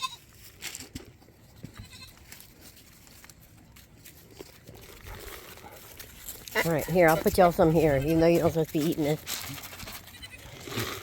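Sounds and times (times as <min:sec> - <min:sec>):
goat bleating: 0:00.0 - 0:00.2, 0:01.7 - 0:02.3, 0:10.0 - 0:11.0.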